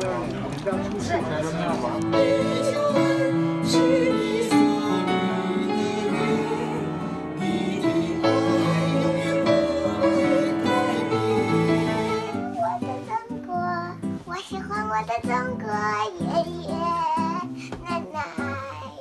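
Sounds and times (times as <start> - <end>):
music with long held notes: 1.6 - 12.9.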